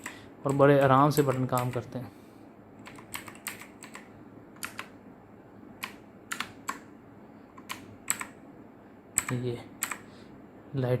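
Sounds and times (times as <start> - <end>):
mechanical keyboard clicking: 0.0 - 1.9, 2.8 - 4.9, 5.8 - 6.9, 7.6 - 8.4, 9.2 - 10.0.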